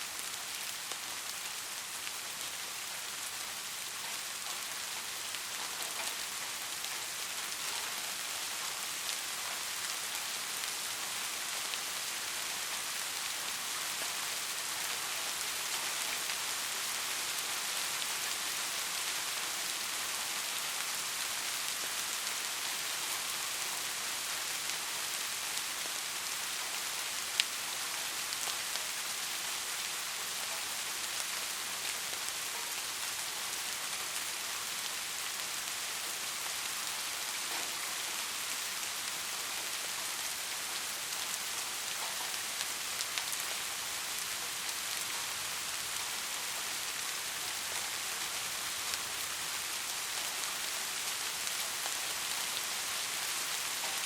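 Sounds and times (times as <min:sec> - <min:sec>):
heavy rain falling: 0:00.0 - 0:54.0.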